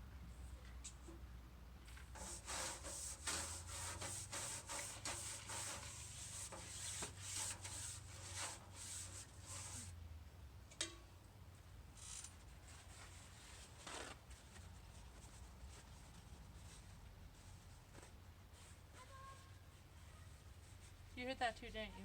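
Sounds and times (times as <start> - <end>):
hand sanding strokes: 2.2 - 9.9.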